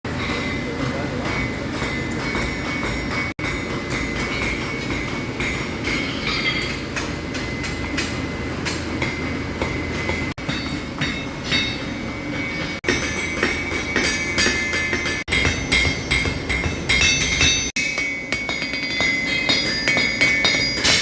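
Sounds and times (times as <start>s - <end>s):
anvil ringing: 0.1s - 21.0s
hammer striking on anvil: 0.1s - 21.0s.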